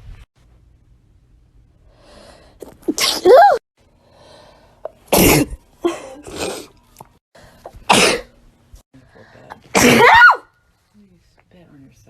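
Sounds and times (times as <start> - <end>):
person sneezing: 2.8 - 3.6, 7.9 - 8.3, 9.6 - 10.4.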